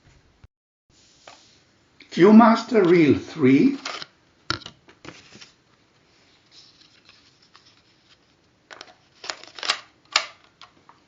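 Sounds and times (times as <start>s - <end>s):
paper rustling: 5.0s - 9.8s.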